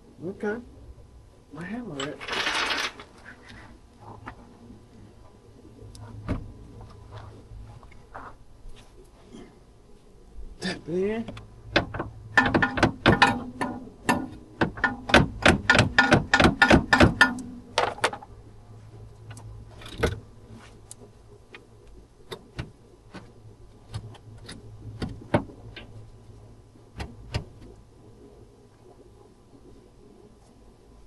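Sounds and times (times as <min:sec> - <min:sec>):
steady low hum: 0:00.0 - 0:31.0
sharp knocks: 0:11.7 - 0:17.9.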